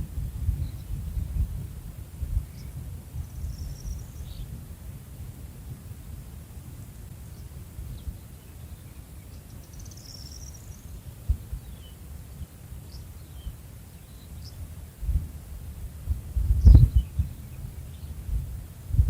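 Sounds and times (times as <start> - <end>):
steady low rumble: 0.0 - 9.2, 14.6 - 19.0
birds chirping faintly: 0.0 - 19.0
brief low thumps: 16.4 - 17.1.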